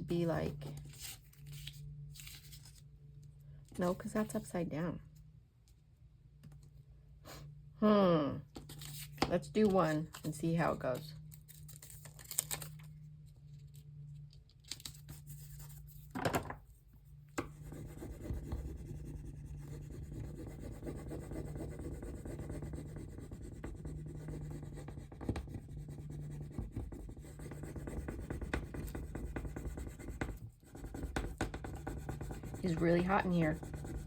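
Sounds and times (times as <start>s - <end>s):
low steady hum: 0.0s - 34.0s
scratchy rubbing on paper: 15.0s - 16.1s, 17.4s - 34.0s.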